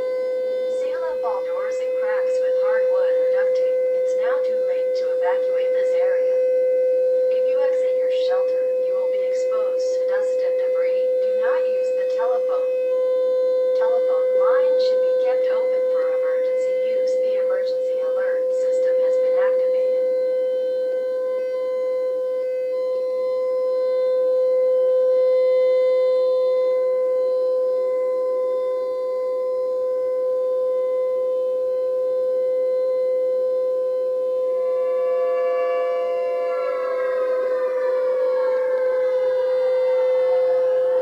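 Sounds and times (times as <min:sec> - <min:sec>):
civil defense siren wailing: 0:00.0 - 0:41.0.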